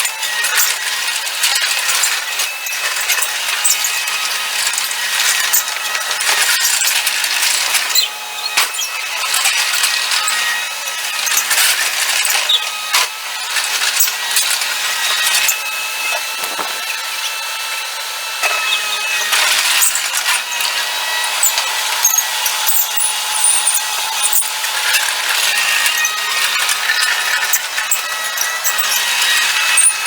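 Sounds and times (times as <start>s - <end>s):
rattles and clanks: 13.7s - 17.2s.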